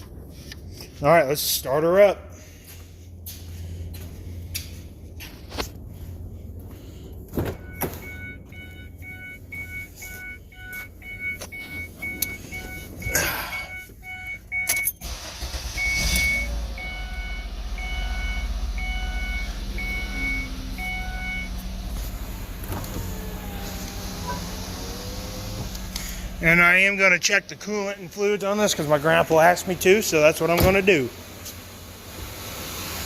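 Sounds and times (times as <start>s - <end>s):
car engine idling: 2.3s - 33.0s
car engine cranking and starting: 3.6s - 33.0s
dashboard warning chime: 7.6s - 25.6s.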